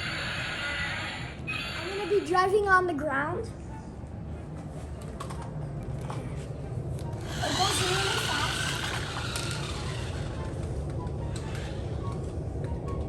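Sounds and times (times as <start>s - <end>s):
toy wavering sound effect: 0.0s - 2.3s, 7.2s - 10.5s
toy truck motor rumbling: 0.0s - 2.4s, 7.2s - 12.1s.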